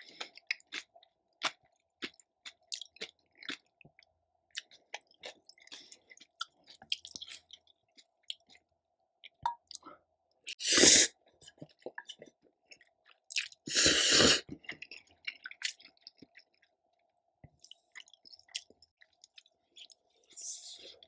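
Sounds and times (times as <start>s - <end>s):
wet chewing: 0.0s - 8.6s, 14.4s - 21.0s
loud sucking slurps: 10.6s - 11.1s, 13.7s - 14.4s.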